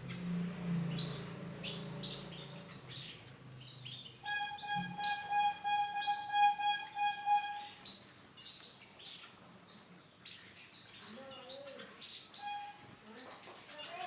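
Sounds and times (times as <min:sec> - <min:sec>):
canary chirping: 0:00.0 - 0:14.0
pulsing buzz-like tone: 0:04.3 - 0:07.8.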